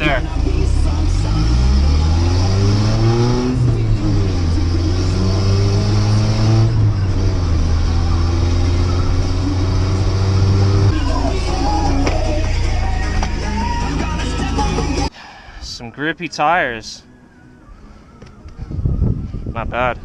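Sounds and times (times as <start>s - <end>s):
pickup engine revving: 0.0s - 15.1s.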